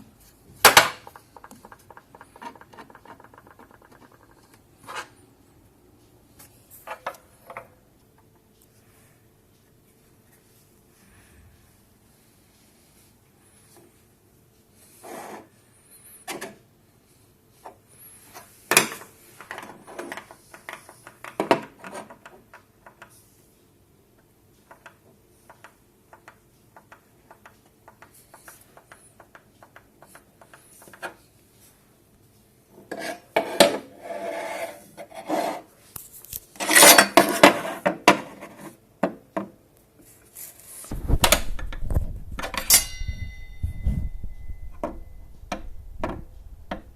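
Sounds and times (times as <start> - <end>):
clicks and knocks of hard objects: 0.6 - 5.1
scraping and rubbing: 1.0 - 5.2, 32.9 - 38.8
low rumble: 40.9 - 46.9.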